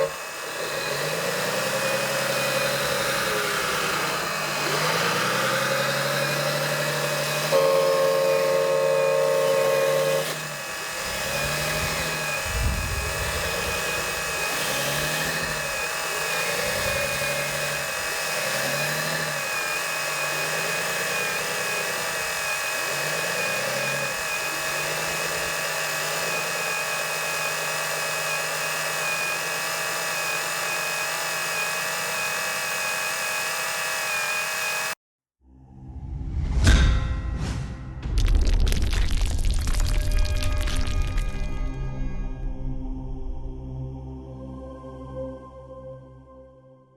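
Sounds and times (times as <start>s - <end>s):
electric motors whining: 0.0s - 35.0s
loud steady tone: 7.2s - 10.8s.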